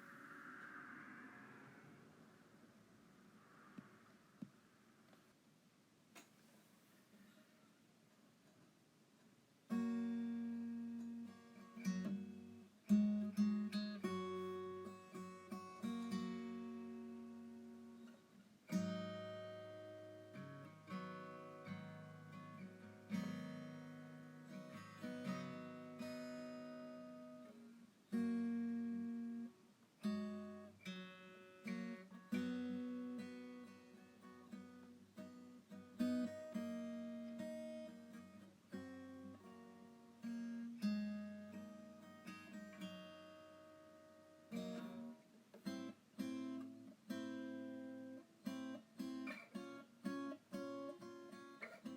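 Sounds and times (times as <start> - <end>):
acoustic guitar plucked slowly: 9.7 - 51.9.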